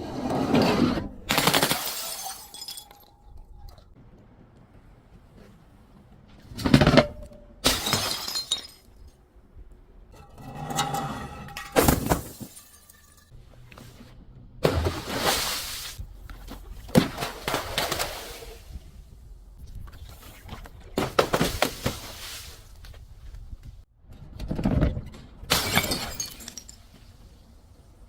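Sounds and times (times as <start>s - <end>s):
glass bottles shattering: 1.3s - 3.6s, 7.6s - 9.1s, 11.4s - 13.3s, 25.5s - 27.0s.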